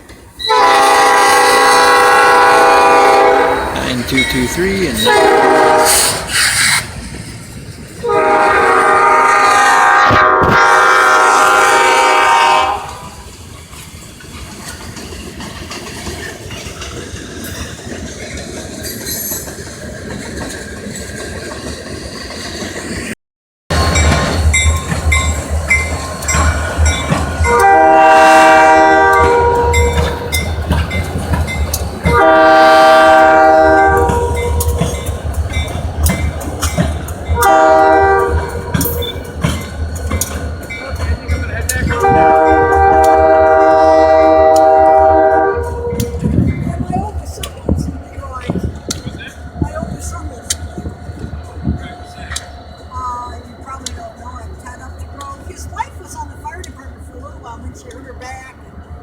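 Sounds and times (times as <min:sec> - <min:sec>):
locomotive engine rumbling: 0:00.0 - 0:23.1, 0:23.7 - 0:59.0
train rumble and wheel clicks: 0:00.0 - 0:59.0
train air horn blasts: 0:00.5 - 0:06.8, 0:08.0 - 0:13.2, 0:27.4 - 0:30.4, 0:32.1 - 0:34.9, 0:37.4 - 0:39.0, 0:41.9 - 0:46.3.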